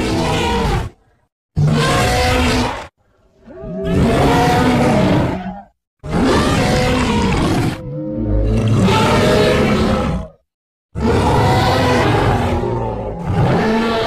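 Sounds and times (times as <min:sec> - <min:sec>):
loud dinosaur roars: 0:00.0 - 0:10.4, 0:11.0 - 0:14.0.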